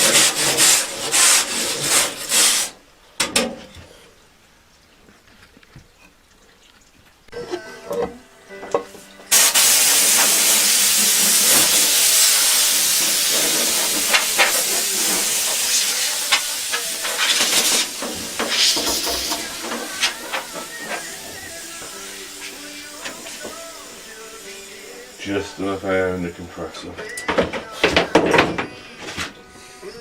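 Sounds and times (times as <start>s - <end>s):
air blow gun hissing: 0.0s - 2.8s, 9.3s - 26.3s.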